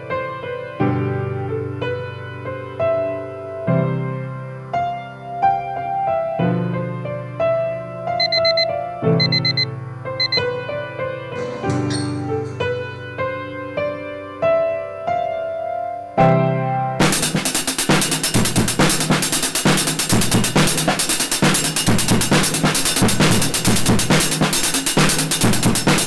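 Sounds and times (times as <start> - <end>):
fast drum beat: 17.1 - 26.0.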